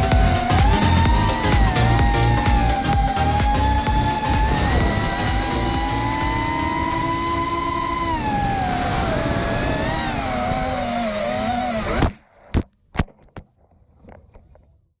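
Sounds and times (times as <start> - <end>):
quadcopter motors whining: 0.0 - 12.2.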